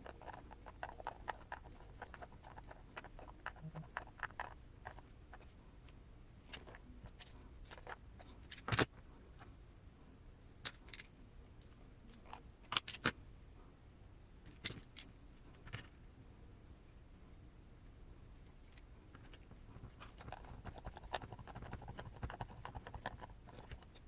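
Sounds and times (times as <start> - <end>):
clicks and taps of small plastic parts: 12.1 - 13.2.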